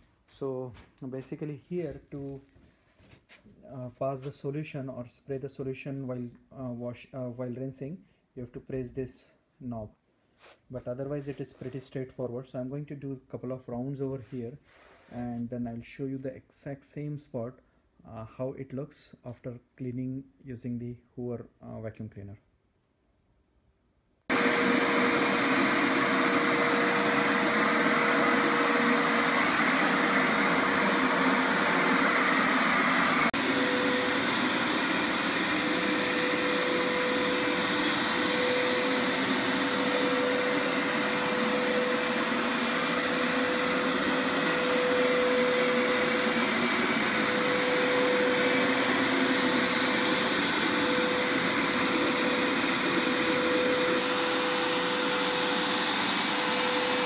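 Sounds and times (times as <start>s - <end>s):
carpet washer humming and whining: 24.3s - 57.0s.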